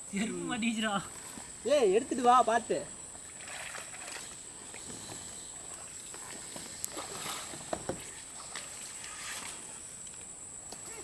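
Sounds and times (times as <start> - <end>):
water sloshing and splashing: 3.1 - 10.0.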